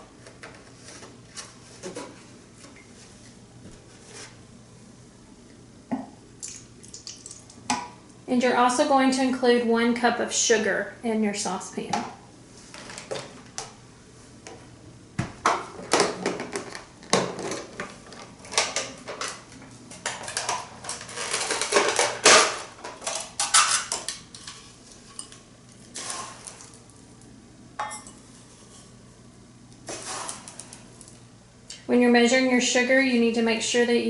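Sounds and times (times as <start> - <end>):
gritty sugar scraping: 20.8 - 21.9, 23.4 - 26.8, 29.9 - 30.8
measuring cup clinking: 27.8 - 28.2.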